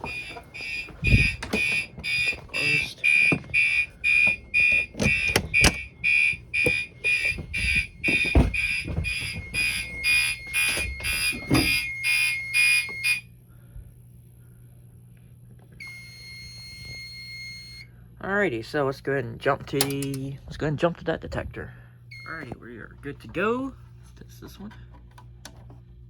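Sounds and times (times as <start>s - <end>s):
knocks and clicks: 0.0s - 11.8s
pulsing fire alarm horn: 0.0s - 13.3s, 15.8s - 17.9s, 22.1s - 22.6s.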